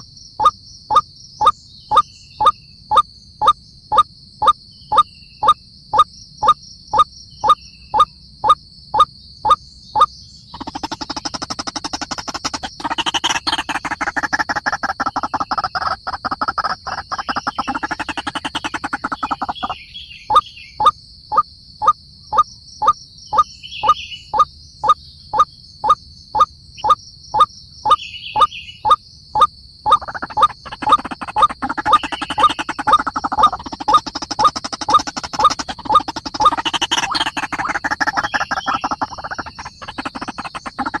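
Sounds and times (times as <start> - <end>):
rapid croaking chatter: 0.0 - 1.0, 10.0 - 20.9, 29.4 - 41.0
bird calling kook notes: 10.0 - 20.9, 26.4 - 41.0
high-pitched whine: 29.4 - 41.0.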